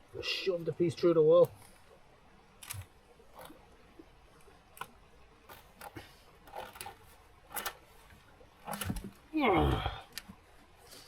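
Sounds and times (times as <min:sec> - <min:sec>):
wood knocking and scraping: 0:04.8 - 0:09.3.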